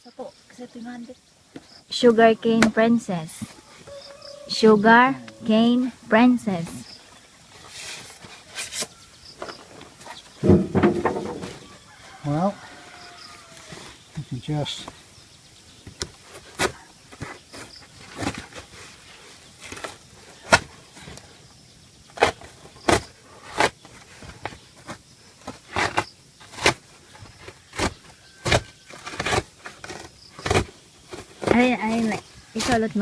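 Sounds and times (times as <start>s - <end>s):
sharp knocks and clatters: 10.4s - 11.7s.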